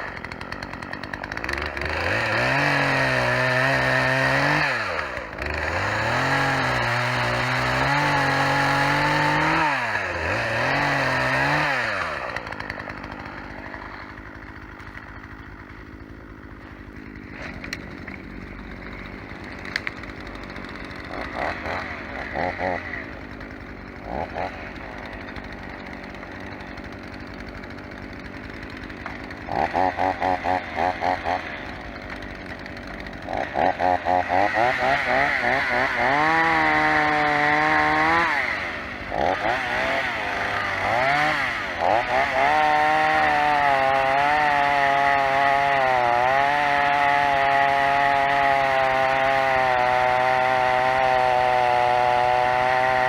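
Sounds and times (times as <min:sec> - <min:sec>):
chainsaw running: 0:00.0 - 0:53.0.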